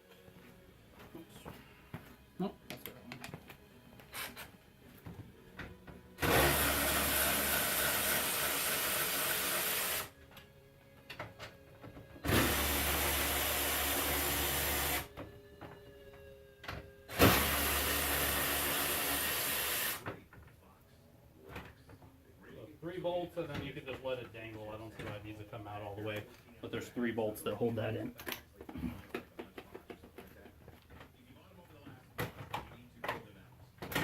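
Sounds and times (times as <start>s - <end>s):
cordless power tool running: 6.2s - 10.1s, 12.2s - 15.1s, 17.1s - 20.0s.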